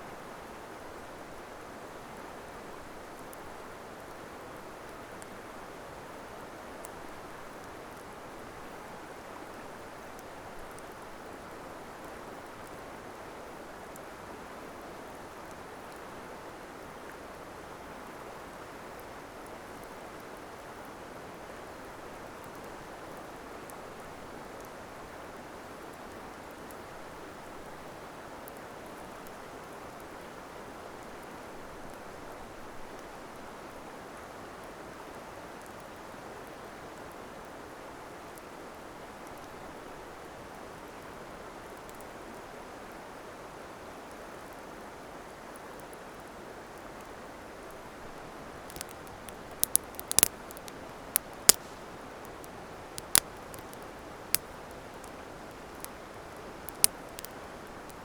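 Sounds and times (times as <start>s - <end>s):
campfire crackling: 47.7s - 58.0s.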